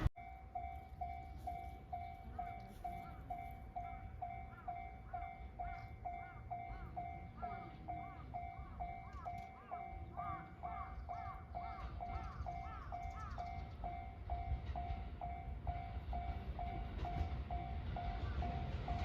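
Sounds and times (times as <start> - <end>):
level-crossing warning bell: 0.0 - 19.0.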